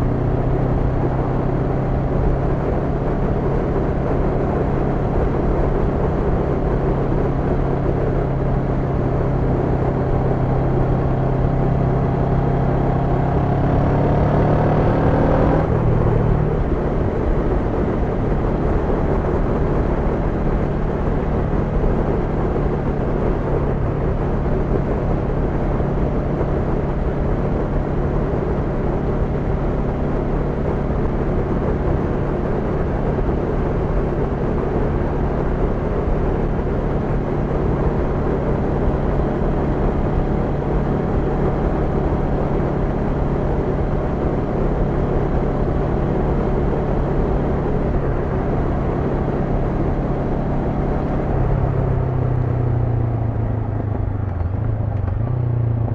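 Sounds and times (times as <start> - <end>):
motorcycle engine cruising: 0.0 - 55.9
wind and road noise: 0.0 - 55.9.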